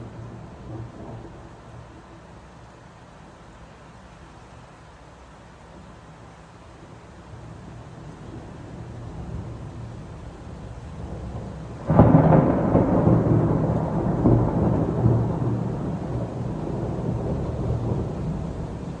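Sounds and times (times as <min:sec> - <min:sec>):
thunder rumbling: 0:00.0 - 0:02.0, 0:08.3 - 0:19.0.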